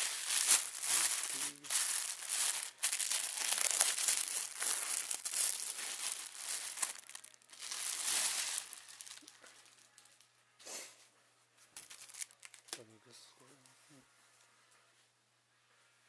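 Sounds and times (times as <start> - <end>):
packaging crinkling and tearing: 0.0 - 10.2, 11.8 - 12.8.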